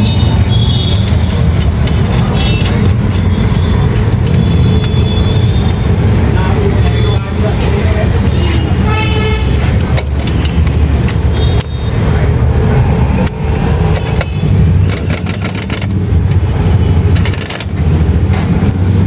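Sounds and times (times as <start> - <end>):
sharp clicks: 13.2 - 16.4.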